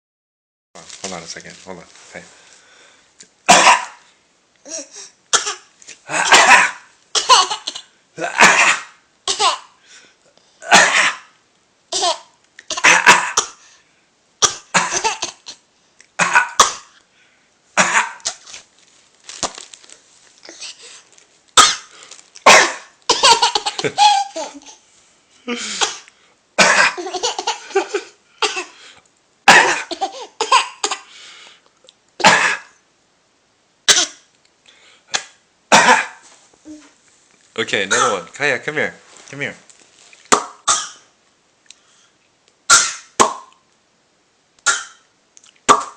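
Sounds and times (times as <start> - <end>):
child coughing: 3.5 - 4.0, 4.7 - 9.7, 12.0 - 13.6, 14.4 - 15.6, 21.6 - 24.8, 25.8 - 28.8, 29.5 - 31.1, 32.2 - 32.7, 33.9 - 34.2, 35.1 - 36.8, 37.9 - 38.3
man coughing: 3.5 - 4.0, 5.4 - 7.4, 8.2 - 9.0, 21.6 - 24.5, 25.5 - 28.8, 29.5 - 31.1, 32.2 - 32.7, 35.1 - 36.2, 37.8 - 38.3.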